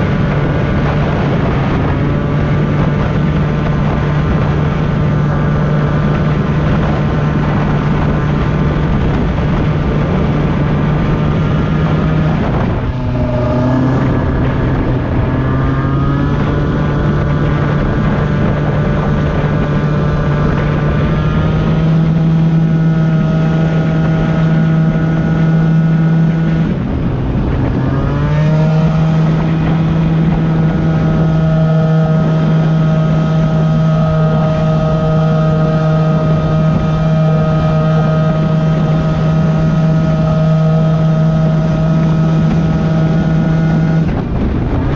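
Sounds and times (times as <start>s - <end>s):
scooter engine revving: 0.0s - 44.8s.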